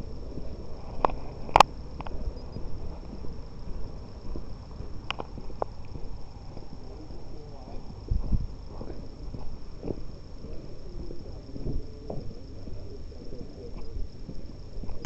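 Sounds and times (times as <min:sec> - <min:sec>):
rumble of footsteps and handling: 0:00.0 - 0:15.0
sharp clicks: 0:01.0 - 0:02.6, 0:05.0 - 0:06.0.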